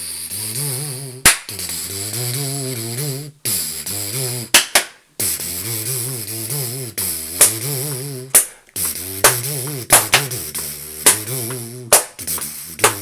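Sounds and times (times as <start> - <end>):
person singing with vibrato: 5.2 - 13.0
sharp percussive clicks: 7.4 - 13.0.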